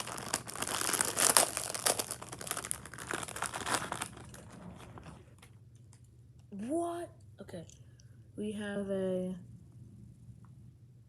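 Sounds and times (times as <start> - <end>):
plastic wrapper crumpled and torn: 0.0 - 5.1.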